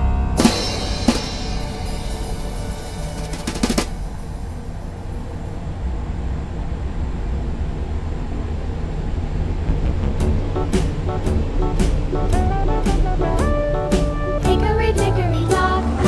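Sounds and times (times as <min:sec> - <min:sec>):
sharp drum hits: 0:00.3 - 0:05.4, 0:10.2 - 0:15.6
background music with drums: 0:00.4 - 0:04.6, 0:10.2 - 0:16.0
steady low bass: 0:09.6 - 0:16.0.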